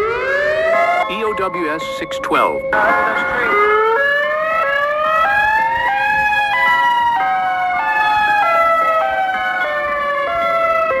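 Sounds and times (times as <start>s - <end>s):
electronic warning siren: 0.0s - 11.0s.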